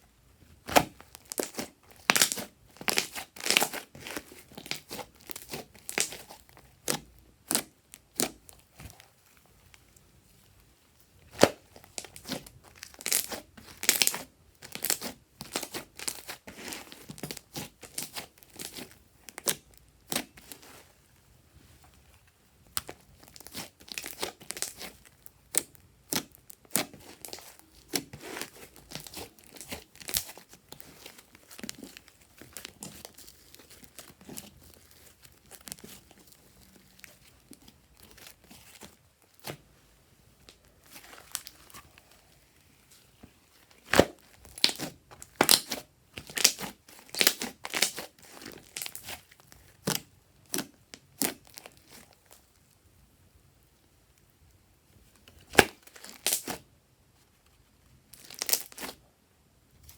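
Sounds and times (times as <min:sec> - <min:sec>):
slime squished by hand: 0:00.6 - 0:09.0, 0:11.3 - 0:20.7, 0:22.7 - 0:39.6, 0:43.8 - 0:52.6, 0:55.4 - 0:56.7.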